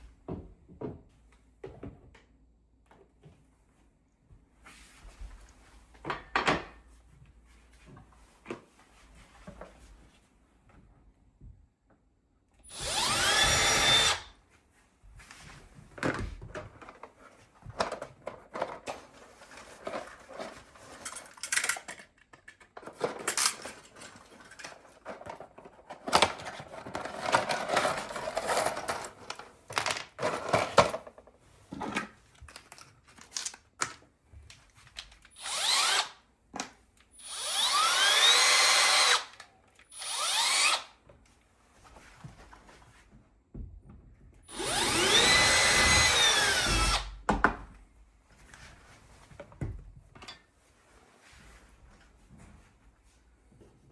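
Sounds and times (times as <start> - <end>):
electric drill into plasterboard: 12.6 - 14.3, 35.3 - 36.2, 37.2 - 41.0, 44.5 - 47.2
tools clicking and knocking: 19.8 - 29.1.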